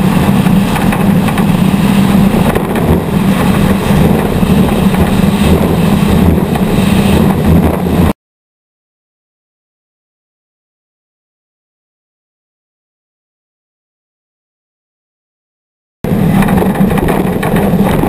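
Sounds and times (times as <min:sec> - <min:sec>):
truck engine running loud: 0:00.0 - 0:08.2, 0:16.0 - 0:18.0.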